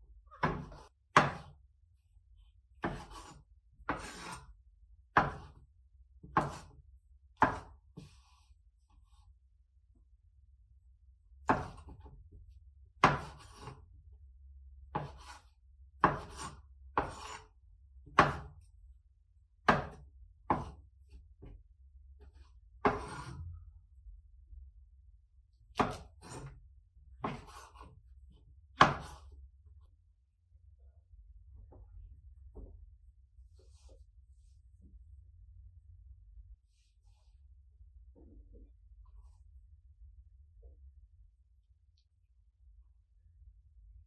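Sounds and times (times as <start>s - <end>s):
knife chopping on wooden board: 0.4s - 1.6s, 2.8s - 4.4s, 5.1s - 5.6s, 6.2s - 6.8s, 7.4s - 8.2s, 11.4s - 12.0s, 13.0s - 13.8s, 14.9s - 15.4s, 16.0s - 17.4s, 18.1s - 18.6s, 19.6s - 20.8s, 22.8s - 23.4s, 25.7s - 26.5s, 27.2s - 27.9s, 28.8s - 29.3s.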